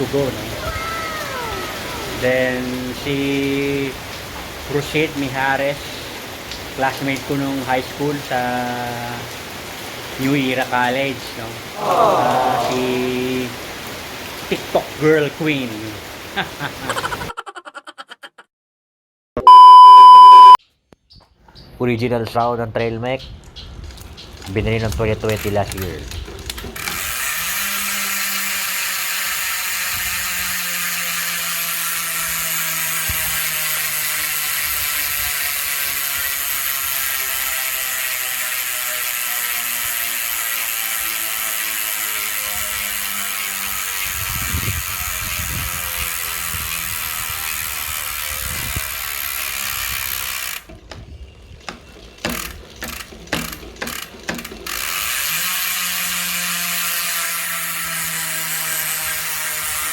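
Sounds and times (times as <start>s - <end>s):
bicycle hub ratchet buzz: 26.8s - 50.7s, 52.2s - 59.9s.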